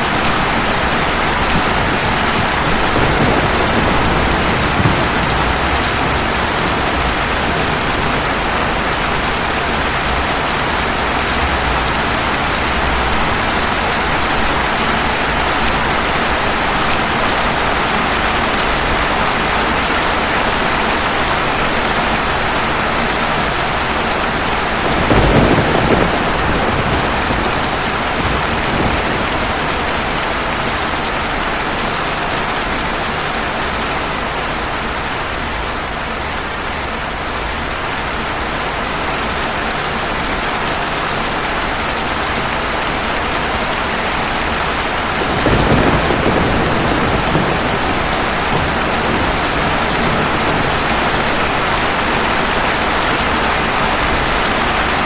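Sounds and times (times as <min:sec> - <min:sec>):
heavy rain: 0:00.0 - 0:55.0
thunder: 0:00.1 - 0:19.1, 0:21.8 - 0:31.8, 0:42.9 - 0:55.0.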